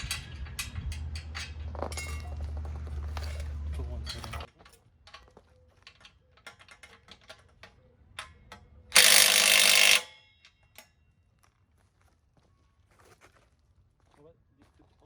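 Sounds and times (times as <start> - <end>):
hand tools clicking and tapping: 0.0 - 11.0
ratchet ticking: 8.9 - 10.3.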